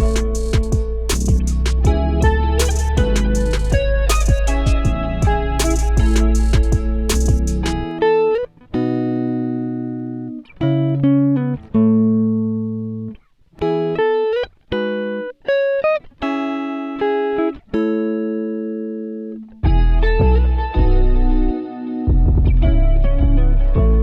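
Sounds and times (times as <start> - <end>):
plucked string melody: 0.0 - 24.0.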